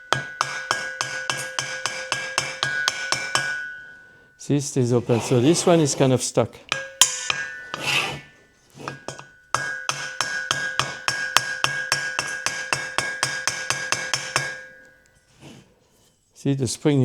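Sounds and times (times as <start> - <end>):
hammer tapping on metal: 0.0 - 4.2, 6.7 - 15.1.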